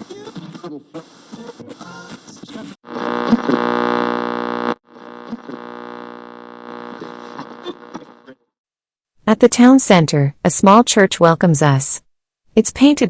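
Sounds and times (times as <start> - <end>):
steady electronic hum: 2.9 - 8.3.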